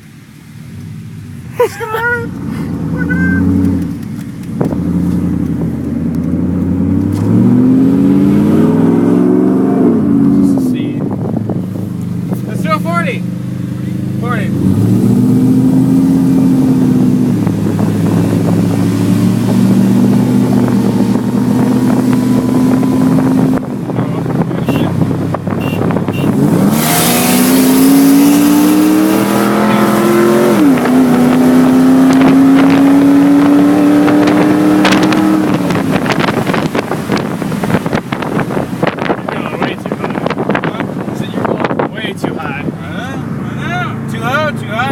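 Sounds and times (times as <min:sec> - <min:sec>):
car engine revving: 0:00.0 - 0:44.9
gear shift: 0:02.3 - 0:07.4.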